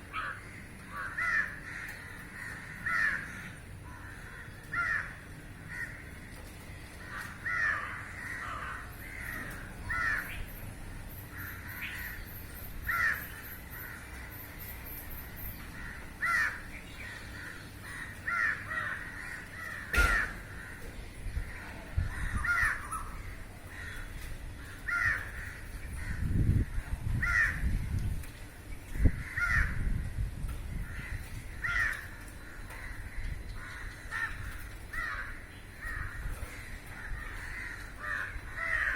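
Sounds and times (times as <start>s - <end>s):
crows cawing: 0.0s - 27.8s, 29.0s - 30.0s, 30.7s - 38.9s
sharp knocks: 19.9s - 20.4s.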